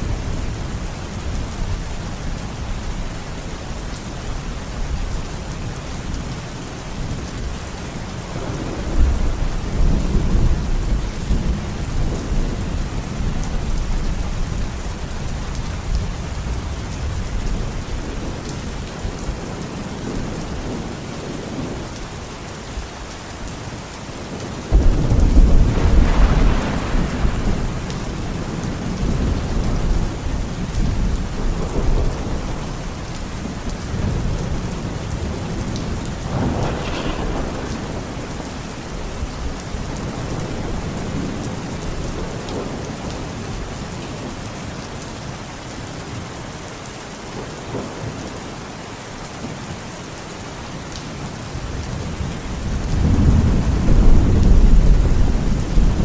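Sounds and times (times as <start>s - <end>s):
steady rain: 0.0s - 56.0s
thunder rumbling: 8.2s - 15.0s, 24.7s - 43.6s, 51.7s - 56.0s
loud thunderclap: 24.7s - 28.0s, 35.3s - 39.4s.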